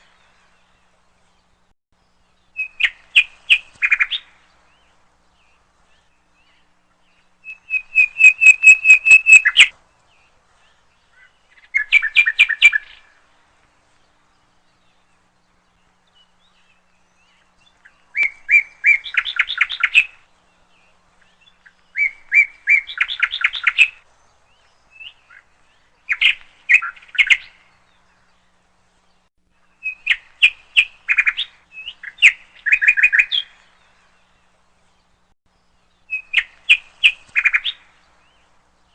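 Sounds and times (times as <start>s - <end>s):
songbird trilling: 7.4s - 9.7s, 16.2s - 20.2s, 21.2s - 24.0s, 29.8s - 33.6s, 36.0s - 38.4s.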